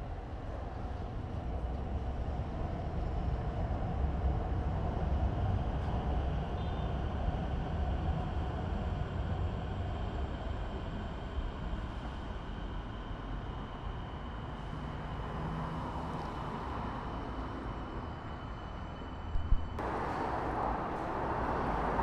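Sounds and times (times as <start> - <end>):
passing traffic rumble: 14.4 - 22.0.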